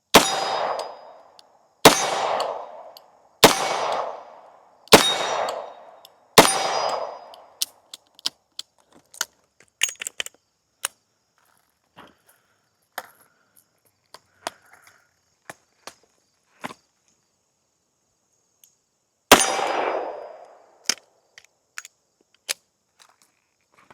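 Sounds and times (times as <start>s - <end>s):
revolver metallic clicks: 4.9s - 8.7s.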